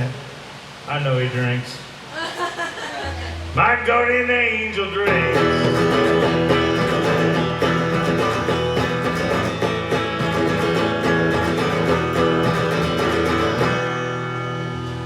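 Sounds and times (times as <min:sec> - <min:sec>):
steady low notes: 0:03.0 - 0:15.0
twangy electric guitar: 0:03.2 - 0:15.0.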